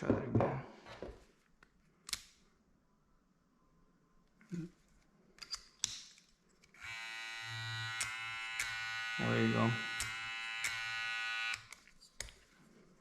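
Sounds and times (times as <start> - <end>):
electric hair clippers buzzing: 6.8 - 11.7.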